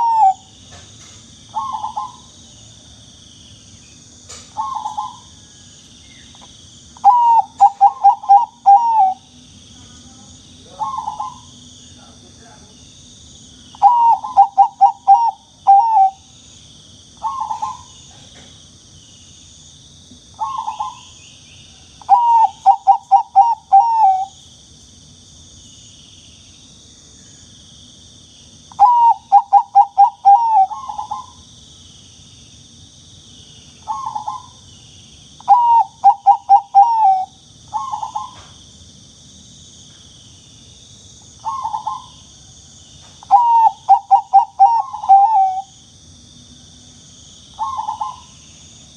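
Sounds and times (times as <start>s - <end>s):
dove cooing: 0.0s - 0.6s, 1.5s - 2.3s, 4.6s - 5.3s, 7.0s - 9.3s, 10.7s - 11.6s, 13.8s - 16.2s, 17.2s - 18.0s, 20.4s - 21.1s, 22.0s - 24.4s, 28.8s - 31.4s, 33.9s - 34.6s, 35.4s - 38.5s, 41.4s - 42.1s, 43.2s - 45.7s, 47.6s - 48.3s.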